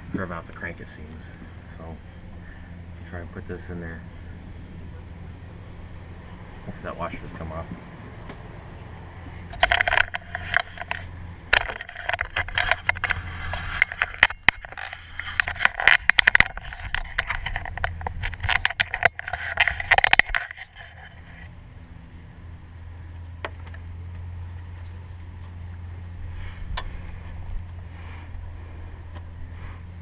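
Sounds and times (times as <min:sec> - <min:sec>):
steady low hum: 0:00.0 - 0:30.0
metal parts scraping and clicking: 0:09.5 - 0:21.5.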